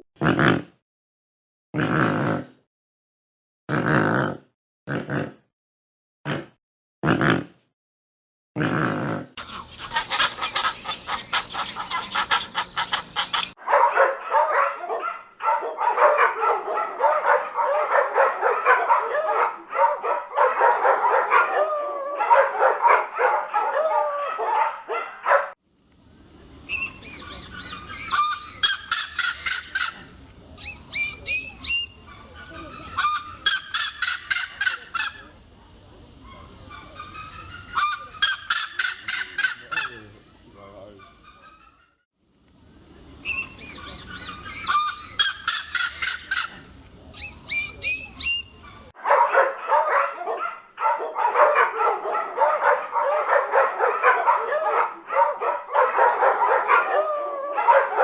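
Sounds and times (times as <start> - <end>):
geese honking: 9.4 - 13.6, 26.6 - 35.4, 36.2 - 41.7, 43.2 - 48.9
high quick chirping calls: 26.6 - 35.3, 36.2 - 41.8, 43.1 - 48.9.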